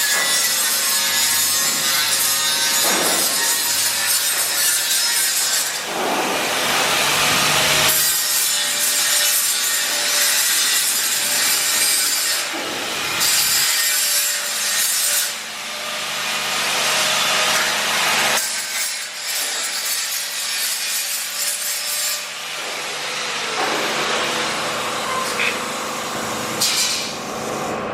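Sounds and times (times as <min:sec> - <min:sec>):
metal being cut or ground: 0:00.0 - 0:27.9.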